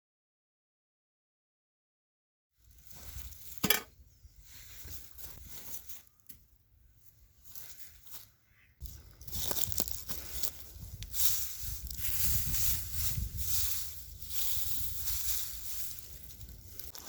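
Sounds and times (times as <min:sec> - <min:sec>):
pine needles crinkling and rustling: 0:02.6 - 0:03.7, 0:04.4 - 0:06.4, 0:07.4 - 0:17.0
metal smoker clink: 0:03.6 - 0:03.9.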